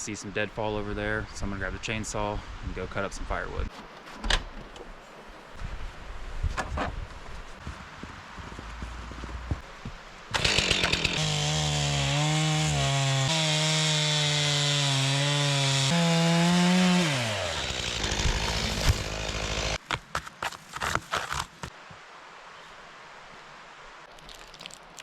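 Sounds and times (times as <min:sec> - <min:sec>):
chainsaw revving and cutting: 0:10.3 - 0:19.8.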